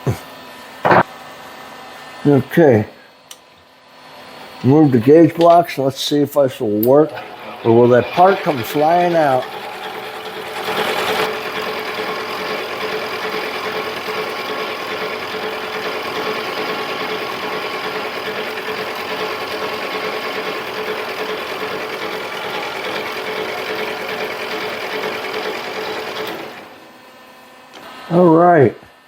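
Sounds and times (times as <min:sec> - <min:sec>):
mini lathe whining: 0:06.7 - 0:27.0.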